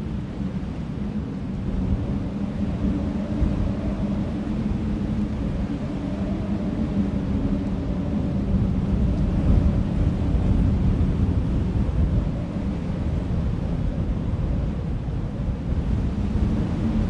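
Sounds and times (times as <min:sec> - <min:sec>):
faint steady drone: 0:00.0 - 0:17.0
wind buffeting microphone: 0:00.0 - 0:17.0.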